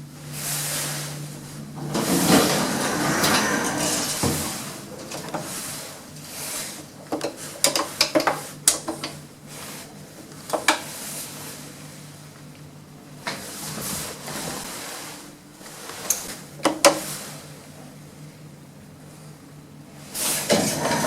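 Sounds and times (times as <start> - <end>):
lift doors sliding: 0.0 - 7.4, 20.2 - 21.0
steady low hum: 0.0 - 20.1.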